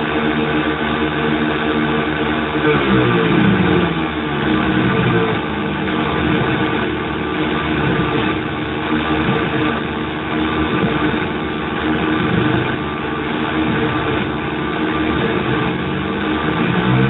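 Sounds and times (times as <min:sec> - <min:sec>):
synthesizer drone: 0:00.0 - 0:17.0.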